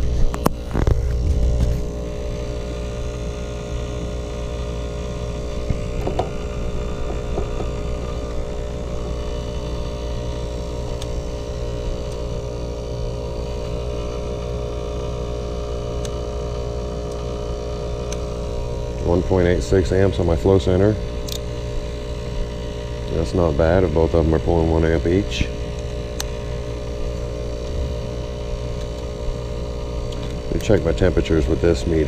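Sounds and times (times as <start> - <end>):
heat pump humming: 0.0 - 32.0.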